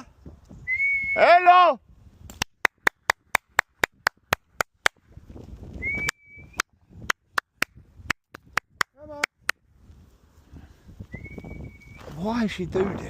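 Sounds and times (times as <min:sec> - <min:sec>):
person whistling: 0:00.7 - 0:01.2, 0:05.8 - 0:06.7, 0:11.1 - 0:12.0.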